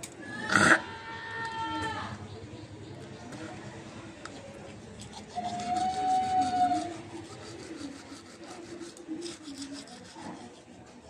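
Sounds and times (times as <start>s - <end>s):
toothbrush scrubbing teeth: 4.9s - 11.0s.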